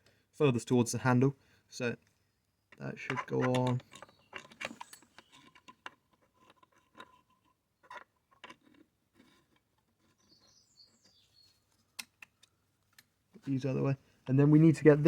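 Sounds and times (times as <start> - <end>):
small parts clicking and tapping: 2.7 - 10.2.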